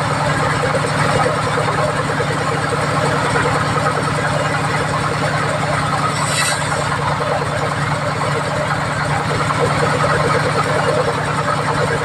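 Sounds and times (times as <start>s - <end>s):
sawmill machinery running: 0.0s - 12.0s
brief hiss: 6.0s - 7.0s.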